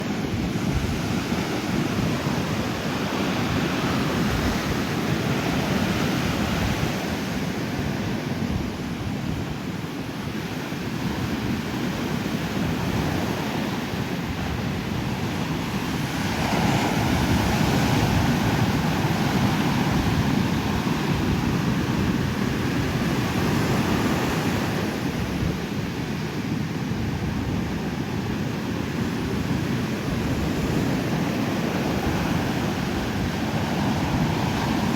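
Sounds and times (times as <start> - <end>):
wind buffeting microphone: 0.0 - 34.9
ocean surf breaking: 13.2 - 25.4, 28.6 - 34.9.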